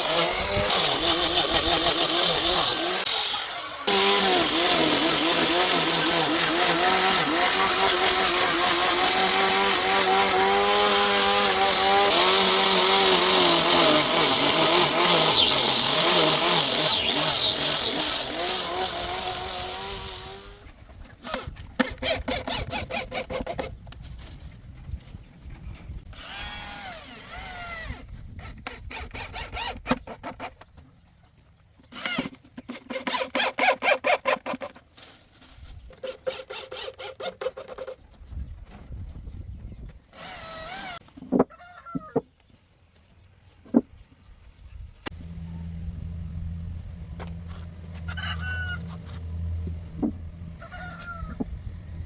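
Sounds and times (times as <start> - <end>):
electric drill whirring in bursts: 0.0 - 20.6, 26.1 - 29.7, 40.1 - 41.0.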